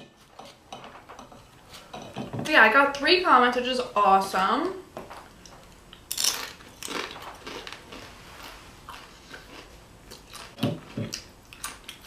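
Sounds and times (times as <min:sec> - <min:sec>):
chewing crackles: 0:05.9 - 0:12.0
crunching food: 0:05.9 - 0:12.0.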